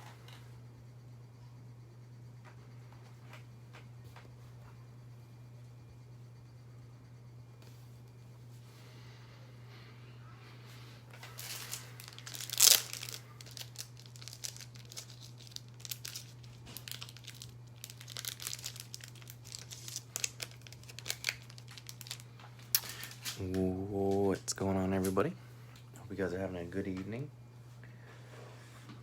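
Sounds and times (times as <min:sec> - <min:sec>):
steady low hum: 0:00.0 - 0:29.0
plastic packaging crinkling: 0:11.2 - 0:23.6
plastic ripping: 0:11.2 - 0:23.6.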